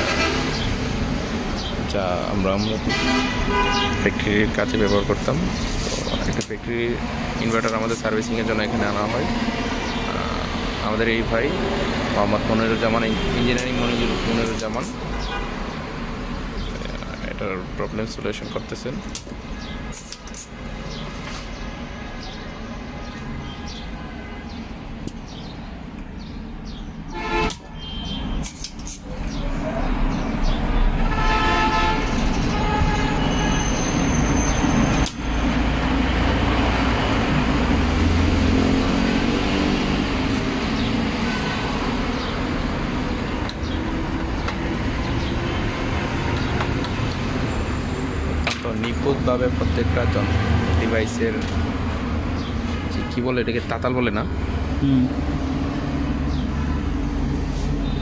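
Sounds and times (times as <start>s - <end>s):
vehicle horn toot: 0.0s - 0.7s, 2.9s - 4.3s, 27.1s - 28.5s, 31.0s - 34.5s
road traffic passing: 0.0s - 58.0s.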